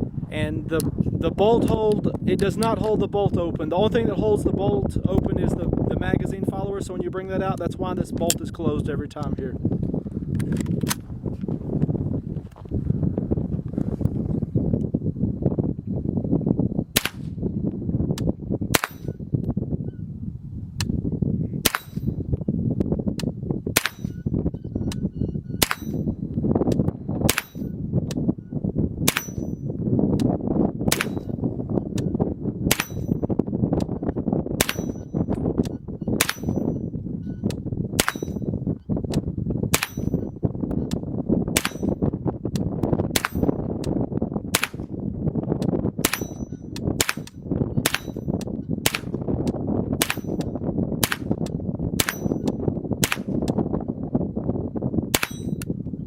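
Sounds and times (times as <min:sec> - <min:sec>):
rifle firing single shots: 0:17.0 - 0:17.3, 0:18.7 - 0:19.1, 0:30.9 - 0:31.3, 0:34.6 - 0:35.0, 0:38.0 - 0:38.4, 0:39.7 - 0:40.1, 0:41.6 - 0:42.0, 0:43.2 - 0:43.5, 0:44.6 - 0:44.8, 0:46.0 - 0:46.4, 0:47.0 - 0:48.2, 0:48.8 - 0:49.2, 0:50.0 - 0:50.4, 0:51.0 - 0:51.4, 0:52.0 - 0:52.4, 0:53.0 - 0:53.4
bullet pinging steel target: 0:17.0 - 0:17.4, 0:18.1 - 0:19.2, 0:21.6 - 0:22.3, 0:23.2 - 0:28.2, 0:29.0 - 0:31.4, 0:32.7 - 0:33.9, 0:34.6 - 0:38.6, 0:39.7 - 0:44.9, 0:45.6 - 0:53.6, 0:55.1 - 0:55.8.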